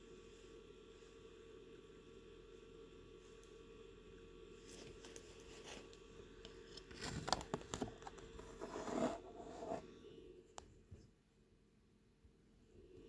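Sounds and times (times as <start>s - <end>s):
crackling and crinkling: 4.6s - 9.7s.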